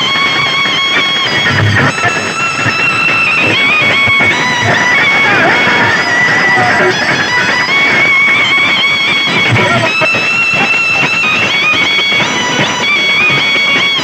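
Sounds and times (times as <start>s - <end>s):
loud music with sustained melody: 0.0s - 14.0s.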